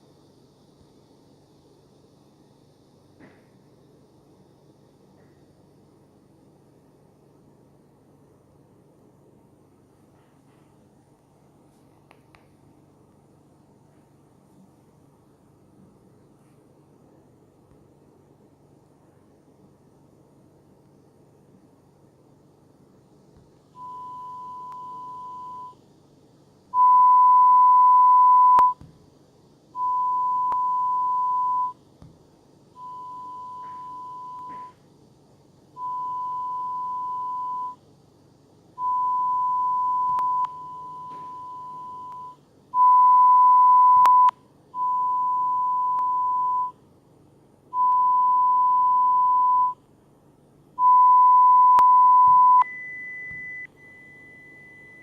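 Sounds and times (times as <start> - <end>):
hearing-test beeps: 23.8 - 25.8, 26.8 - 28.8, 29.8 - 31.8, 32.8 - 34.8, 35.8 - 37.8, 38.8 - 46.8, 47.8 - 49.8, 50.8 - 55.0.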